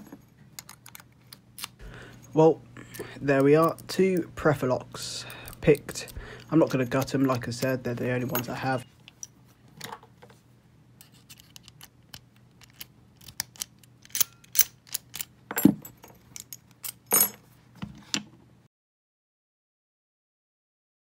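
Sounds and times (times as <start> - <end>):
metallic clinks of padlocks: 12.6 - 17.4.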